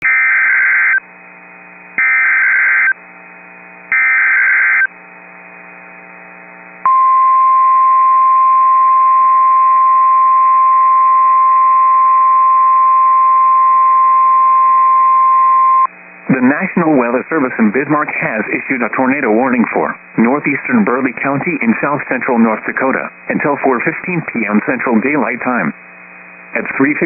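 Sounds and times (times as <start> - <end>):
faint static: 0.4 - 27.0
steady warning alarm tone: 2.0 - 3.0, 3.9 - 4.9.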